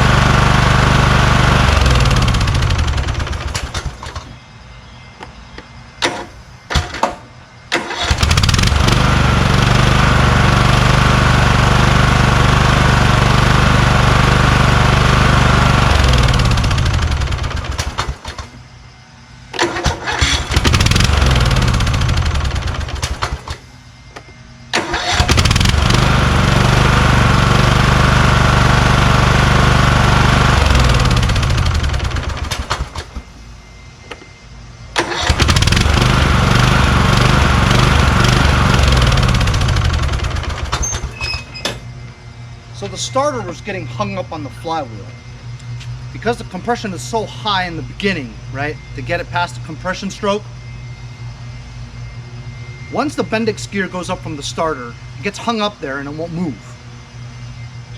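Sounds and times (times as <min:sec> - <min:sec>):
lawn tractor engine running: 0:00.0 - 0:04.3, 0:06.0 - 0:18.7, 0:19.5 - 0:33.3, 0:34.9 - 0:50.2.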